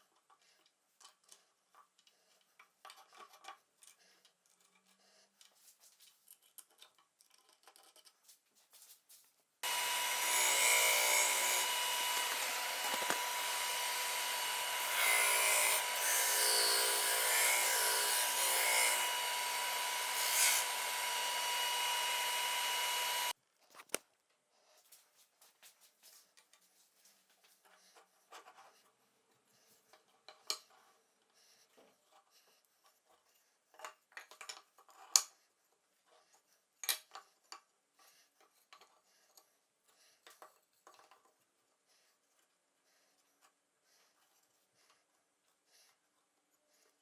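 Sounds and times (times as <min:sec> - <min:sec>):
faint clicks of tools and wood: 0:00.1 - 0:08.4, 0:11.6 - 0:14.0, 0:27.4 - 0:35.4, 0:36.0 - 0:37.8, 0:40.2 - 0:41.6
power tool working wood: 0:09.6 - 0:23.3.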